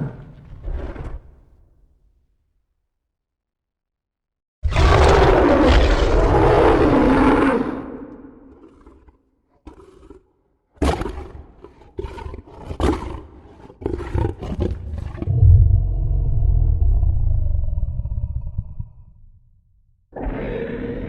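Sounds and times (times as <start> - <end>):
deep monster roar: 0.0 - 1.2, 14.1 - 19.2, 20.2 - 21.0
short sharp snarling roars: 0.0 - 1.3.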